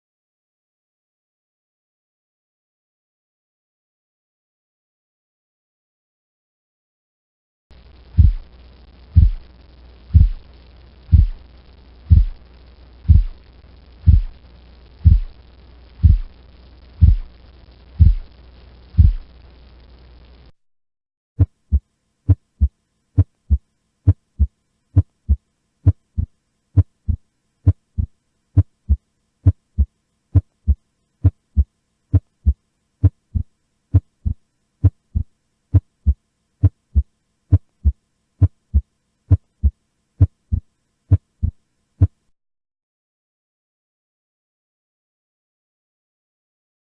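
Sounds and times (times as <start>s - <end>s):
heartbeat lub-dub: 8.0s - 19.3s, 21.4s - 42.2s.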